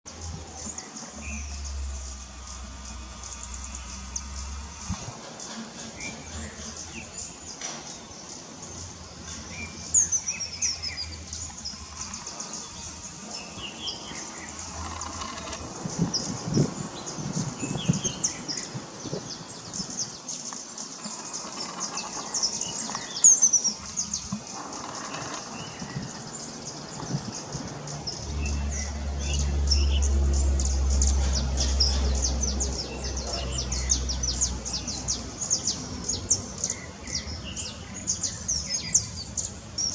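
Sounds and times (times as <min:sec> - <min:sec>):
low steady rumble: 0:00.1 - 0:07.5
birds chirping: 0:00.1 - 0:39.9.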